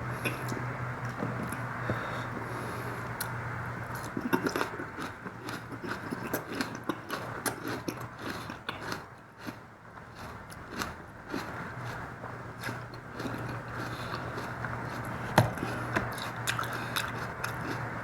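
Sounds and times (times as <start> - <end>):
steady low hum: 0.0 - 18.0
chewing and biting food: 3.9 - 18.0.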